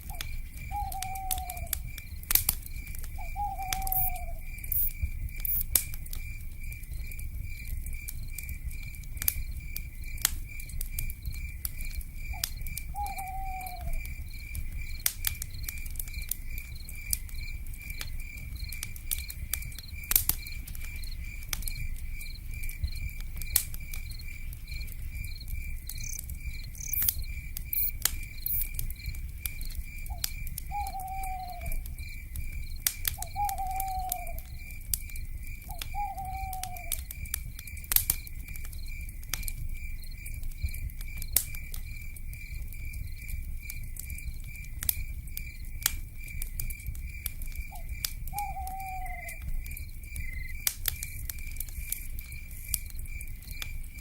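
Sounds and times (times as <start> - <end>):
insect chorus: 0.0 - 54.0
wood fire crackling and popping: 0.0 - 54.0
owl call: 0.1 - 1.7, 3.2 - 4.4, 12.4 - 14.0, 30.1 - 31.8, 33.2 - 34.5, 35.8 - 37.0, 47.8 - 49.4.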